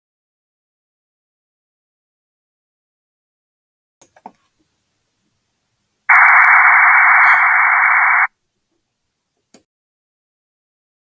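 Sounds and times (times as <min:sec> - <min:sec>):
hiss-like data signal burst: 0:06.1 - 0:08.3.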